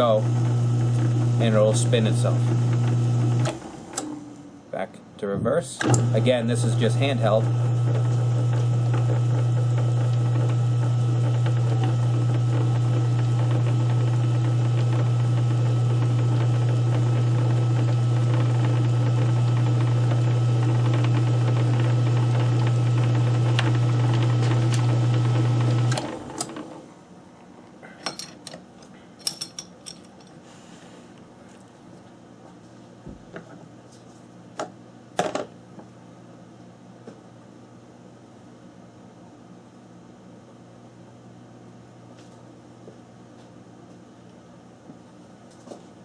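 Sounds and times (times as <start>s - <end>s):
lathe motor humming: 0.0s - 4.2s, 5.9s - 26.8s.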